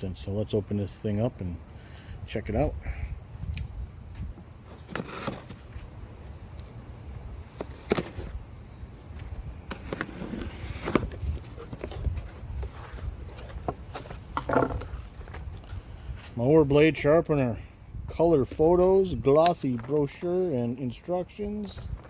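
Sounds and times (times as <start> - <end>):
knocks and scrapes on cardboard: 9.7 - 15.0.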